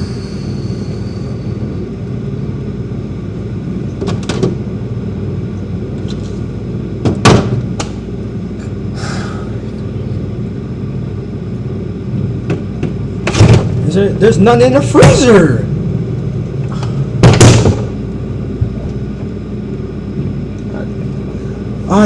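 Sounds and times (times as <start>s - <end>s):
refrigerator low hum: 0.0s - 22.0s
loud thud: 17.2s - 18.0s.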